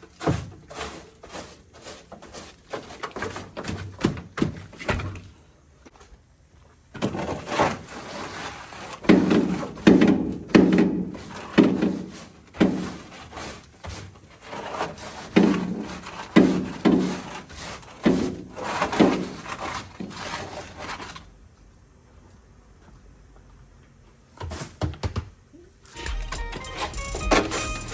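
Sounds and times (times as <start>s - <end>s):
scraping and knocking debris: 6.9s - 21.3s.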